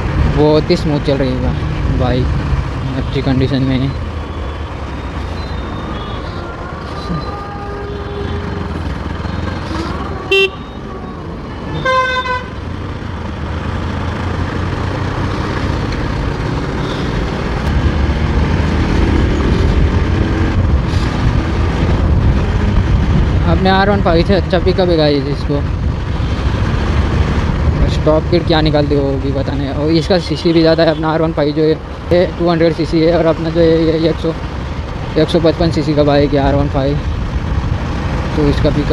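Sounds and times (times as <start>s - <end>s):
motorcycle engine and wind rumble: 0.0s - 38.9s
pitched honk: 5.6s - 12.7s
horn blast: 5.8s - 12.7s.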